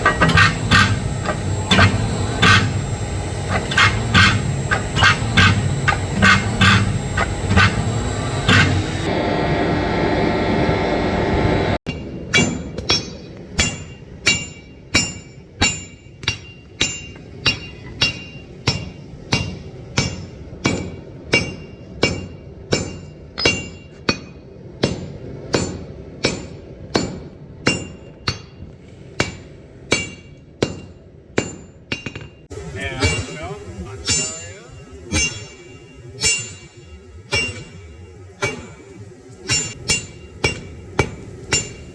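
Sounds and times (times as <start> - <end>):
hammer striking steel on anvil: 0.0 - 9.1, 11.9 - 41.9
dense continuous noise: 32.5 - 41.9.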